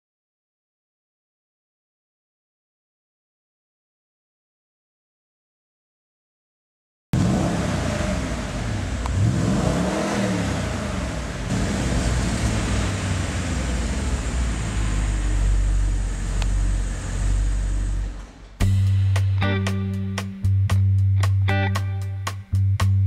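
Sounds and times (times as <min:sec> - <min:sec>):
car engine revving: 0:07.2 - 0:20.8.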